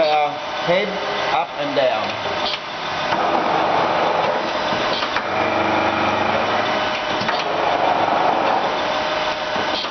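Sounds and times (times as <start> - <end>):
surface grinder running: 3.2 - 9.3.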